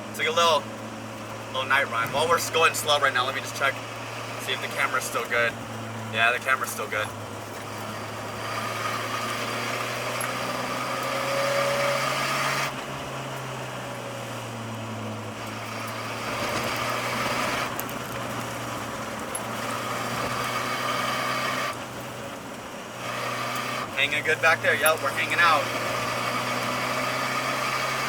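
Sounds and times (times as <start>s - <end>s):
car engine hum: 0.0s - 28.0s
road noise inside car: 0.0s - 28.0s.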